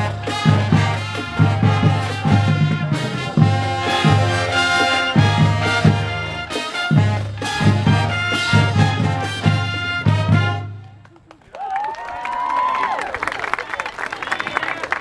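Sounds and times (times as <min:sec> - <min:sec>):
low brass bass line: 0:00.0 - 0:11.0
trumpets and trombones: 0:00.0 - 0:11.1.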